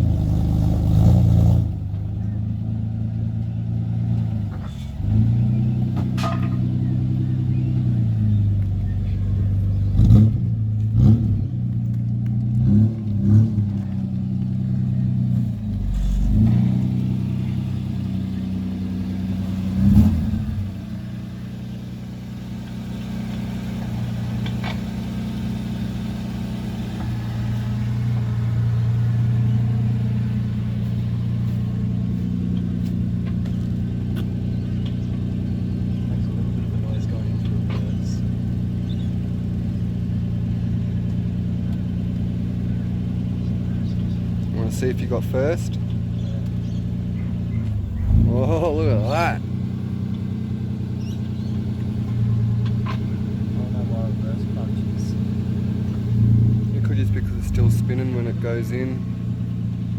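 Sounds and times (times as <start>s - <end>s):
car engine revving and idling: 0.0s - 59.9s
sharp engine knocks: 5.9s - 6.8s.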